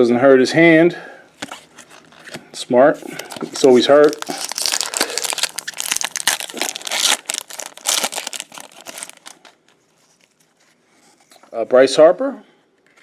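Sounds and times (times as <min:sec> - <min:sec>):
plastic wrapper crinkling: 0:03.0 - 0:11.5.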